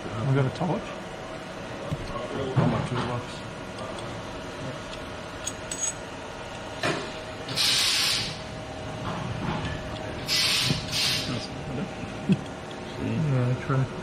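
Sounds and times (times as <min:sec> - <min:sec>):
loud hissing bursts: 0:07.5 - 0:08.4, 0:10.3 - 0:11.4.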